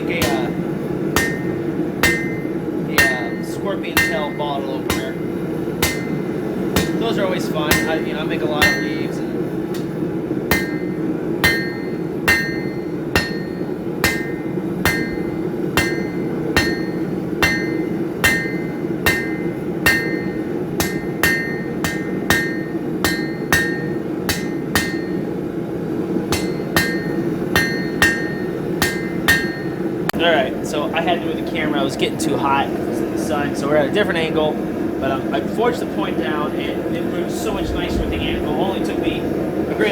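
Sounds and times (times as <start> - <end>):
hammer striking steel on anvil: 0.0 - 25.5, 26.2 - 30.0
steady low roar: 37.0 - 39.9.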